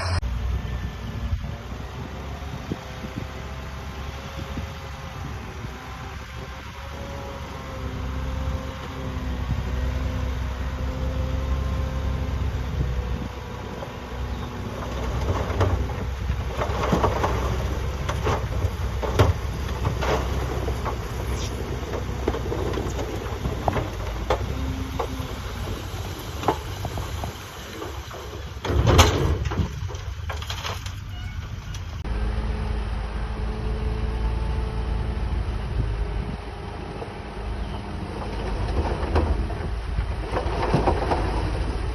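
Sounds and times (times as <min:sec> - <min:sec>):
bulldozer engine rumbling: 0:00.0 - 0:41.9
metallic clanks and knocks: 0:27.8 - 0:31.9.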